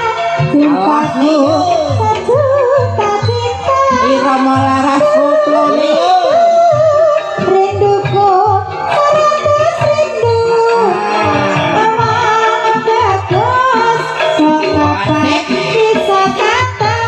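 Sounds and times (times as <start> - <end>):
person singing melody: 3.9 - 17.0
hand drum beat: 6.7 - 17.0.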